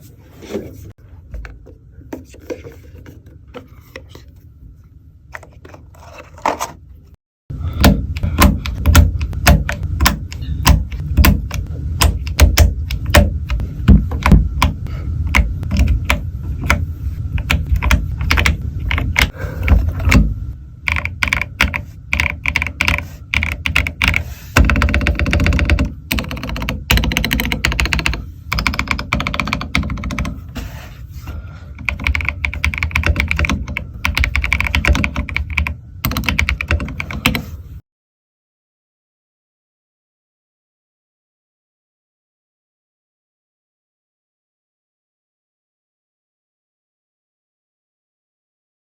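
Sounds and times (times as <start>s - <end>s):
typing on mechanical keyboard: 20.9s - 30.3s, 31.8s - 37.4s.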